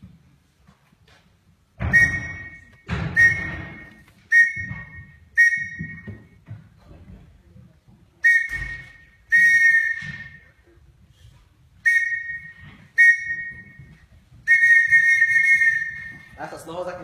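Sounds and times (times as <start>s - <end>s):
shrill whistle blasts: 1.8s - 6.4s, 8.2s - 10.6s, 11.8s - 16.4s.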